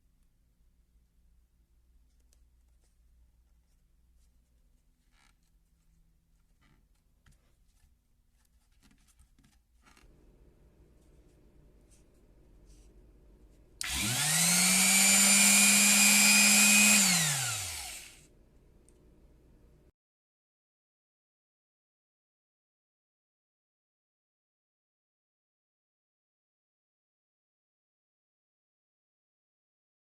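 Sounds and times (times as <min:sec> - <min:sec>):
orbital sander humming: 0:13.8 - 0:18.2.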